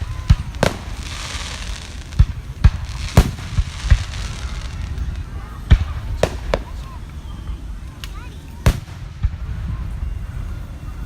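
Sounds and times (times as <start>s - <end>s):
crackling fizz of fireworks: 0.0s - 11.0s
fireworks bursting with booms: 0.0s - 11.0s.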